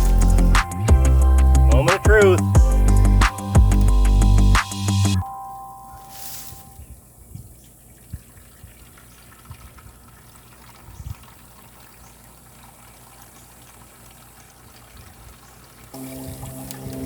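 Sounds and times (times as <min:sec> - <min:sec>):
liquid pouring and trickling: 0:07.8 - 0:17.0.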